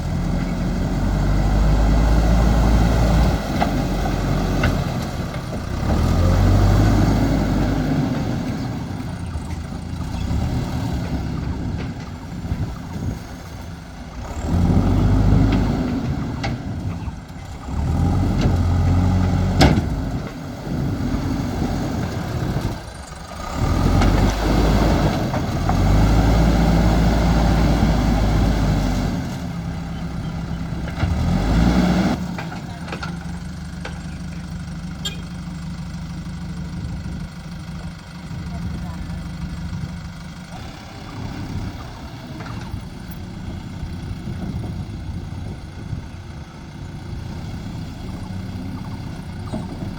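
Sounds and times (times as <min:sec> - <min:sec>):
diesel engine revving: 0:00.0 - 0:49.9.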